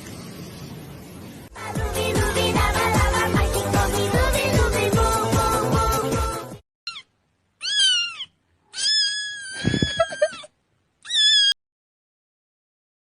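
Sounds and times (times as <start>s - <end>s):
music: 1.5s - 6.6s
cat meowing: 6.9s - 11.6s.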